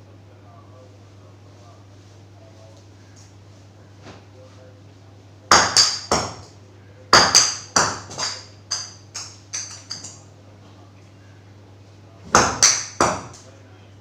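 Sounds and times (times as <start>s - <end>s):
ball bouncing on hard surface: 5.5s - 6.5s, 7.2s - 10.2s, 12.3s - 13.4s.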